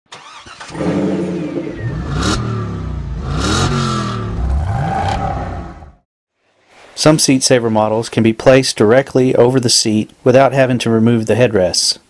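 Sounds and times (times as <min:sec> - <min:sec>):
car engine revving: 0:00.2 - 0:06.0.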